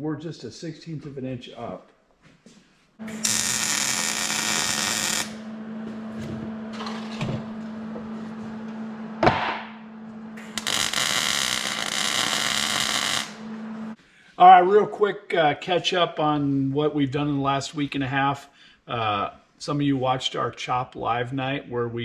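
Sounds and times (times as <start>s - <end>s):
welding arc hiss: 3.0s - 5.5s, 10.4s - 13.5s
welder electrical hum: 3.0s - 14.0s
sharp knock: 9.2s - 9.8s.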